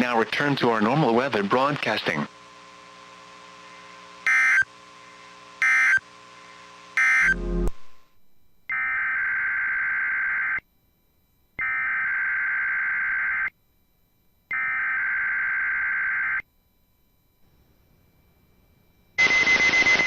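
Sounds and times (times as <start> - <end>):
buzzing digital data tones: 7.0 - 8.0.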